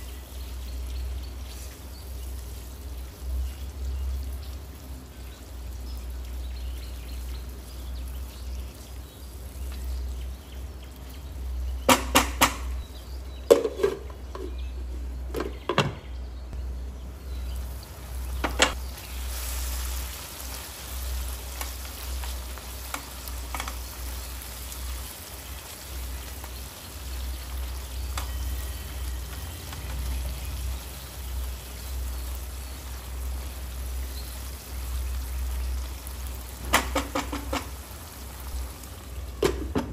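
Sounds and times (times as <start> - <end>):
food sizzling in a pan: 0.0 - 12.8, 17.2 - 39.9
steady low hum: 0.0 - 39.9
utensil knocking against pan: 11.9 - 12.7, 36.6 - 37.7.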